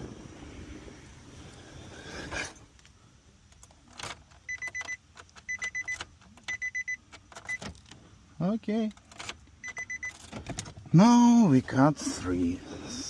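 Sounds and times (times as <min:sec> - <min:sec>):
key clicking and rattling in ignition: 0:03.5 - 0:08.0, 0:08.8 - 0:10.9
car warning chime beeps: 0:04.5 - 0:07.7, 0:09.6 - 0:10.2.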